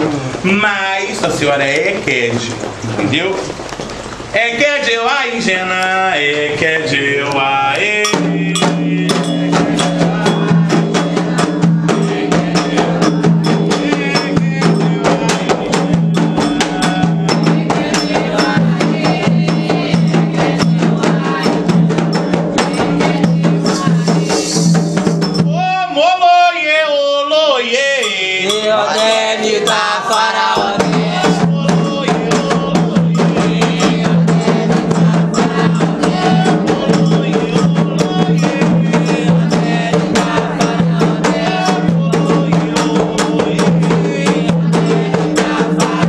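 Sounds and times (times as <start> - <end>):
person singing melismatic line: 7.5 - 26.5, 27.8 - 46.0
hand drums and percussion: 7.7 - 25.8, 27.9 - 46.0.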